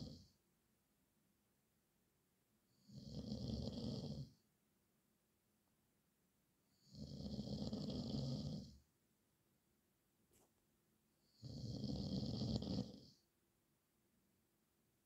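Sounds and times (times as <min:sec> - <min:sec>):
man snoring: 0:00.0 - 0:00.2, 0:02.8 - 0:04.3, 0:06.8 - 0:08.8, 0:11.3 - 0:13.2.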